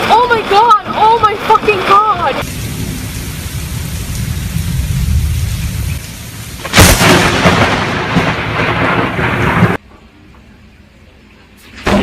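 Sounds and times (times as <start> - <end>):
heavy rain falling: 0.0 - 9.8
thunderclap and rumble: 2.2 - 9.8.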